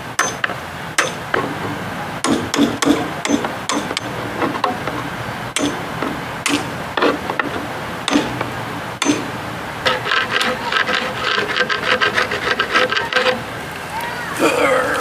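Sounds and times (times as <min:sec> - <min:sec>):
tool knocking fiberglass: 0:02.2 - 0:13.5.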